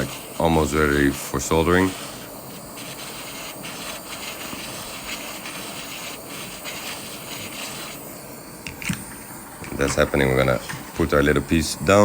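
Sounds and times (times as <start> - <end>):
torch flame hissing: 0.0 - 12.0.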